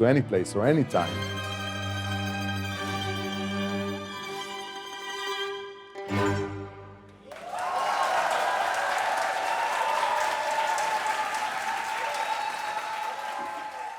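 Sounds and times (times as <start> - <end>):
audience applause: 7.2 - 13.9.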